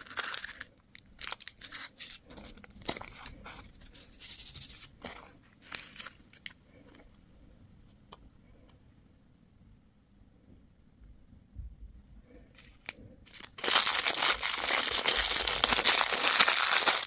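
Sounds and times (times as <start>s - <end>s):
plastic packaging crinkling: 0.0s - 6.6s, 12.6s - 17.0s.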